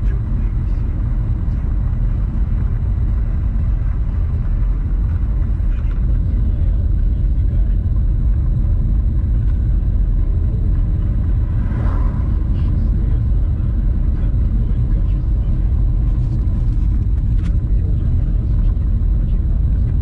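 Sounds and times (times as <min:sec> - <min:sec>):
vehicle engine and road noise: 0:00.0 - 0:20.0.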